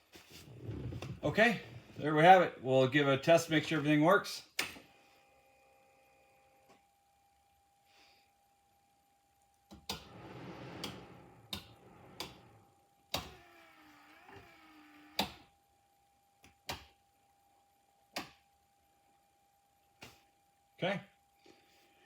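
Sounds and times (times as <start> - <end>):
rushing noise: 10.1 - 12.6.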